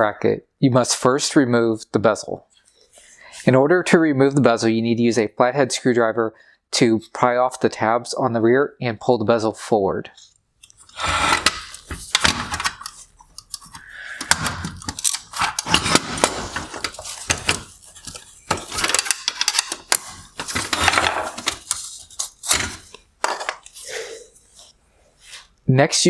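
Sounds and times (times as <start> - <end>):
screwdriver prying plastic clicks: 10.6 - 22.8.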